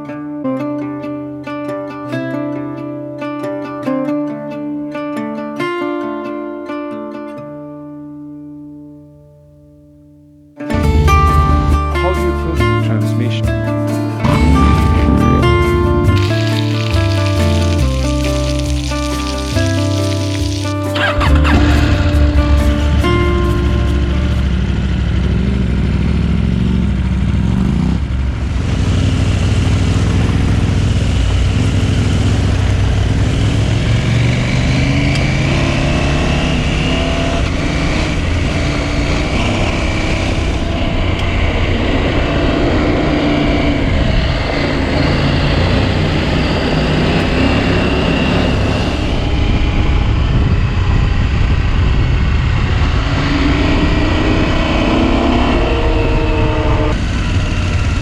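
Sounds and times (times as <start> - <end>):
wind noise: 10.7 - 26.2, 28.3 - 58.0
motorcycle engine revving: 10.7 - 58.0
road noise: 10.7 - 58.0.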